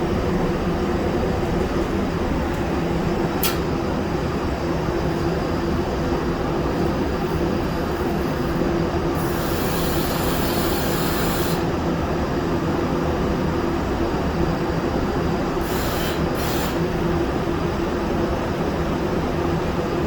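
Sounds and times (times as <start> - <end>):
shop machinery humming: 0.0 - 20.0
spray gun hissing air: 9.2 - 11.7, 15.6 - 16.9.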